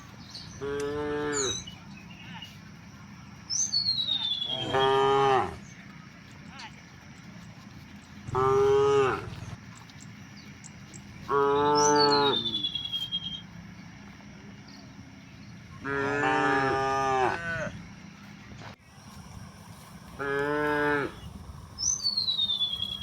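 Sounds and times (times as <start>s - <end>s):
cattle mooing: 0.5s - 1.7s, 4.4s - 5.6s, 8.3s - 9.6s, 11.3s - 12.8s, 15.8s - 17.8s, 20.2s - 21.3s.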